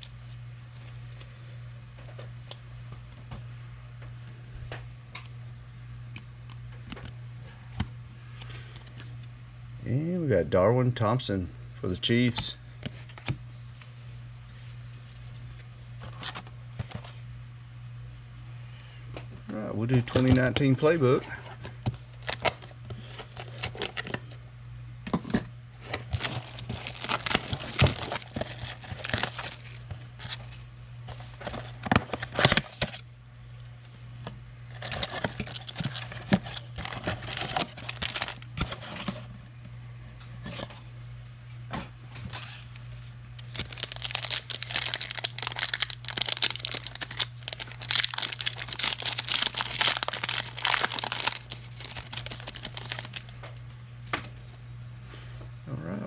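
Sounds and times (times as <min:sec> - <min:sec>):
wrapper tearing and crinkling: 0:22.0 - 0:24.2, 0:26.0 - 0:29.8, 0:34.8 - 0:38.5, 0:43.4 - 0:53.4.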